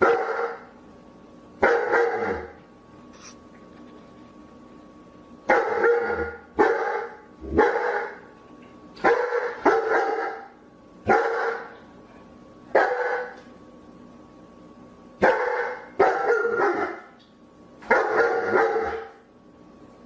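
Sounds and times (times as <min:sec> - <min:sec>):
dog barking: 0:00.0 - 0:00.7, 0:01.6 - 0:02.5, 0:05.5 - 0:08.2, 0:09.0 - 0:10.5, 0:11.1 - 0:11.8, 0:12.7 - 0:13.4, 0:15.2 - 0:17.1, 0:17.8 - 0:19.2.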